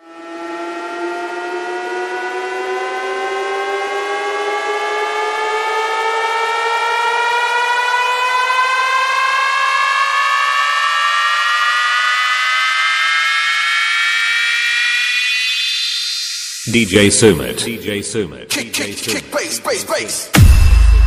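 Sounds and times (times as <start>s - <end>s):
siren rising in pitch: 0.0s - 16.7s.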